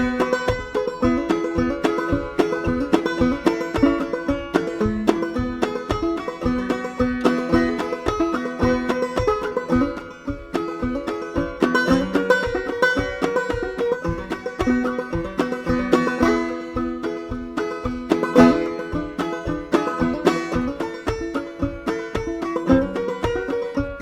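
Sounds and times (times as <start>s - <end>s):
banjo plucked notes: 0.0s - 24.0s.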